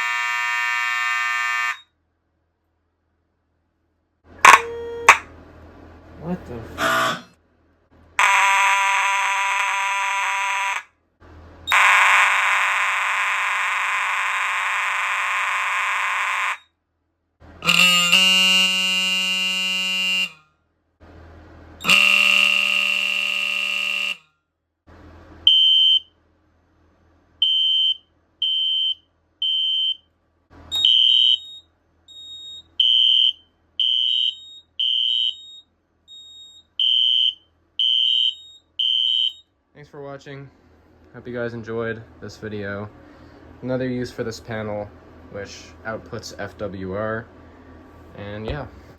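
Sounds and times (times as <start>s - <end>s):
buzzing fire alarm horn blasts: 0.0s - 2.0s, 4.3s - 5.3s, 6.8s - 7.4s, 8.2s - 11.0s, 11.7s - 16.7s, 17.6s - 20.5s, 21.8s - 24.4s, 25.5s - 26.1s, 27.4s - 30.0s, 30.7s - 39.6s
high-pitched horn beeps: 4.4s - 5.2s, 6.8s - 7.3s, 17.6s - 20.4s, 21.8s - 24.3s.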